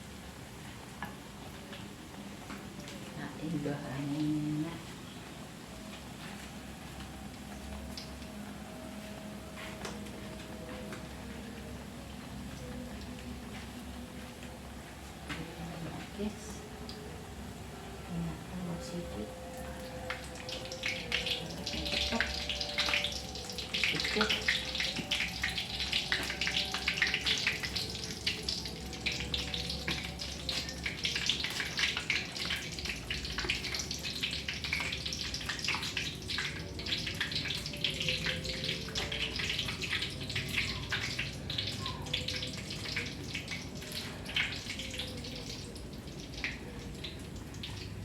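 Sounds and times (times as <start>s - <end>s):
oil sizzling in a pan: 11.4s - 48.0s.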